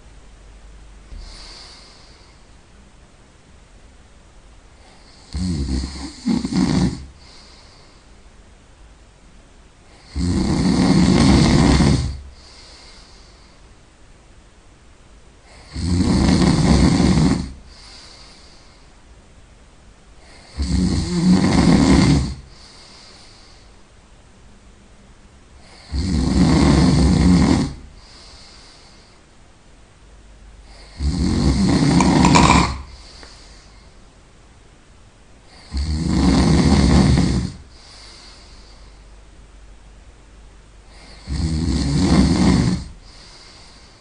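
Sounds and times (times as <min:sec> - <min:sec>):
breathy exhale: 0:01.1 - 0:02.6, 0:07.1 - 0:08.2, 0:12.2 - 0:13.7, 0:17.6 - 0:19.0, 0:22.4 - 0:23.8, 0:27.9 - 0:29.3, 0:31.8 - 0:34.0, 0:37.5 - 0:39.1, 0:42.9 - 0:44.0
person snoring loudly: 0:05.0 - 0:07.7, 0:09.9 - 0:13.0, 0:15.5 - 0:18.1, 0:20.2 - 0:22.8, 0:25.6 - 0:28.2, 0:30.7 - 0:33.2, 0:35.5 - 0:37.9, 0:40.9 - 0:43.3.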